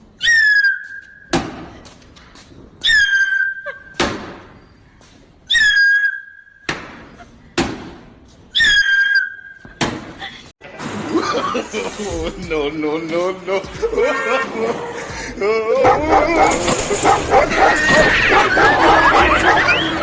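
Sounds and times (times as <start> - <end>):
whistle blasts: 0.2 - 1.3, 5.5 - 6.7, 8.6 - 9.6.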